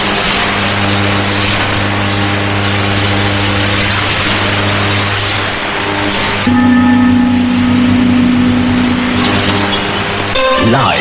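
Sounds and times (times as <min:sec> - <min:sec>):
radio hiss and static: 0:00.1 - 0:11.0
low steady hum: 0:06.4 - 0:10.7.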